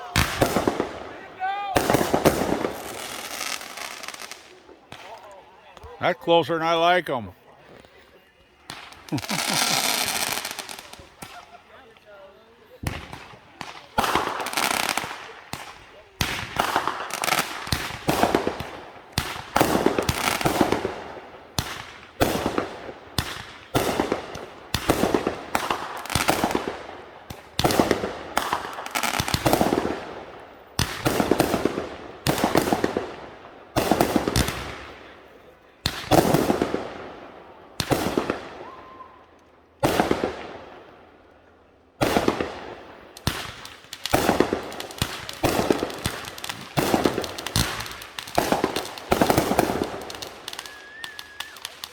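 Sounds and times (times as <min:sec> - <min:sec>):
fireworks bangs with crackle: 0:00.0 - 0:06.0, 0:08.5 - 0:35.2, 0:35.8 - 0:39.0, 0:39.8 - 0:40.9, 0:42.0 - 0:51.9.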